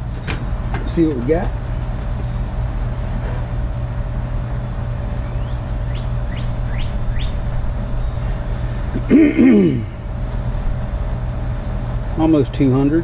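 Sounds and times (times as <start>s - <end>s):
steady low hum: 0.0s - 13.0s
bird chirping: 5.2s - 8.8s.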